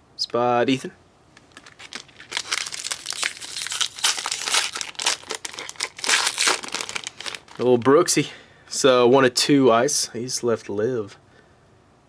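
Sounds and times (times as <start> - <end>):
wrapper crinkling and tearing: 1.4 - 7.9.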